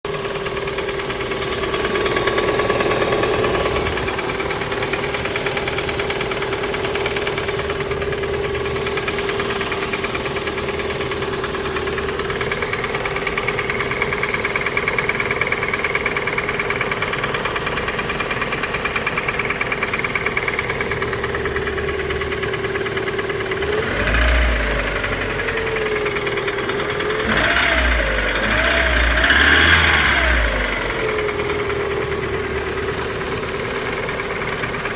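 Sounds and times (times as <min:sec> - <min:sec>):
car engine idling with a knock: 0:00.2 - 0:23.7, 0:30.8 - 0:34.9
engine revs blipping: 0:23.5 - 0:34.9.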